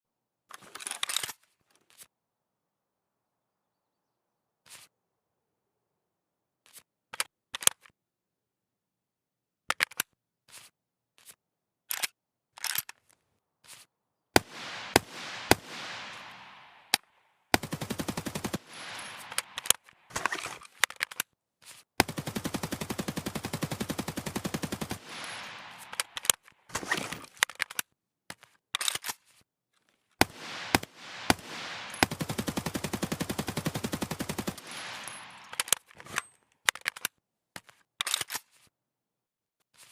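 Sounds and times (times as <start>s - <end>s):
assault rifle gunfire: 14.4s - 17.0s, 17.6s - 20.3s, 22.0s - 26.9s, 30.2s - 35.7s.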